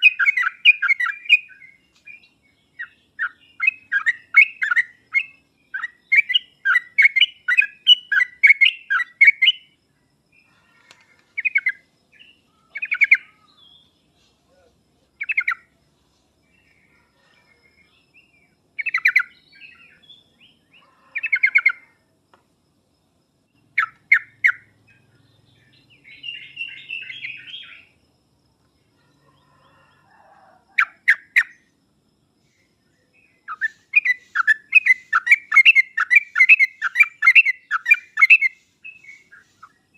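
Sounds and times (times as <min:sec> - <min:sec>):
bulbul singing: 0:00.0 - 0:15.8, 0:17.6 - 0:22.0, 0:23.4 - 0:28.1, 0:30.8 - 0:31.8, 0:32.4 - 0:39.9
bird scratchy chatter: 0:33.5 - 0:39.8.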